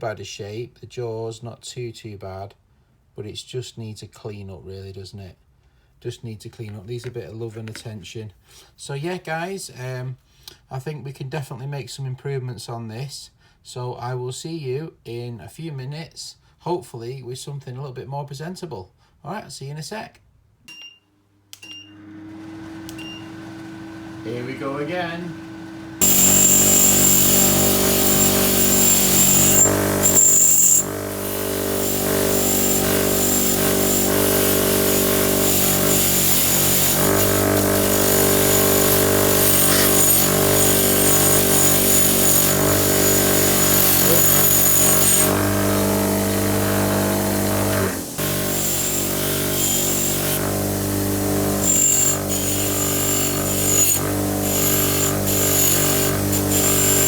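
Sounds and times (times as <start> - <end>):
power tool grinding steel: 22.4 - 57.0.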